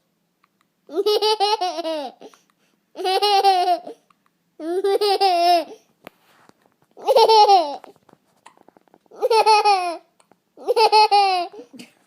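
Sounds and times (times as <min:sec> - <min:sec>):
baby boy laughing: 0:00.9 - 0:02.4, 0:03.0 - 0:05.9, 0:07.0 - 0:07.9, 0:09.1 - 0:12.0.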